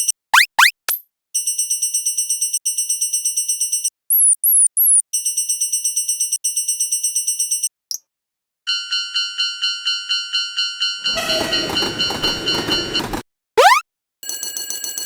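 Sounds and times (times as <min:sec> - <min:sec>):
electronic warning bell dings: 0:10.4 - 0:13.2
falling chirps: 0:13.6 - 0:13.8.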